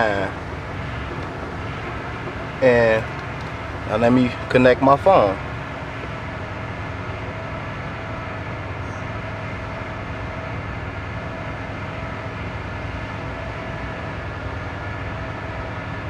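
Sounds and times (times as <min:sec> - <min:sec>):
car cabin rumble and hum: 0:00.0 - 0:06.6
faint steady whine: 0:00.0 - 0:08.2.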